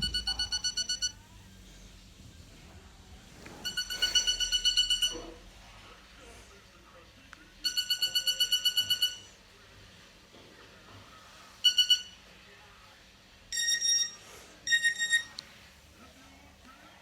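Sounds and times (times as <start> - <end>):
mobile phone alarm beeps: 0.0 - 1.2, 3.6 - 5.3, 7.6 - 9.3, 11.6 - 12.2, 13.5 - 15.4.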